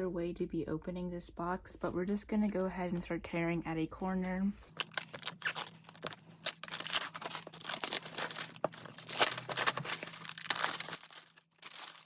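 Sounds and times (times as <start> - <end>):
wrapping being torn open: 4.7 - 12.0.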